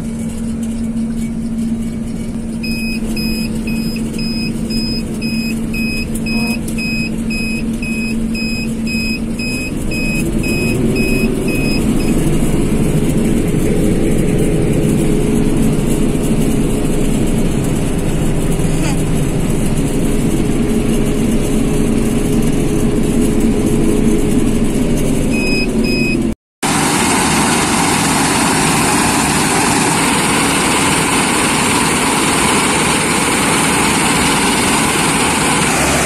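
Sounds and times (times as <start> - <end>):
diesel engine running: 0.0 - 36.0
electronic beeper: 2.6 - 12.9, 25.3 - 26.3.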